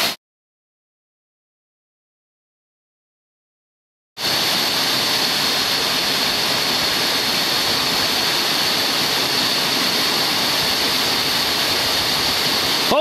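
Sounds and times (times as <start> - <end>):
small waterfall pouring: 4.2 - 13.0.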